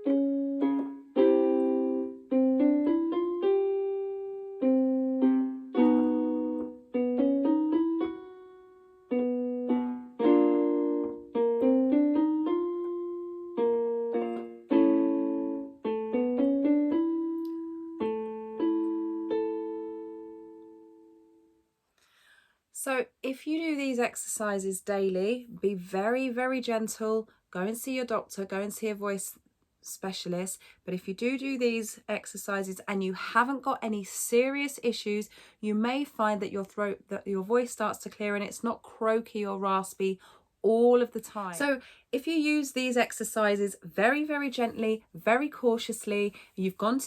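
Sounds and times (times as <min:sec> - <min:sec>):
piano notes and chords: 0:00.0 - 0:21.6.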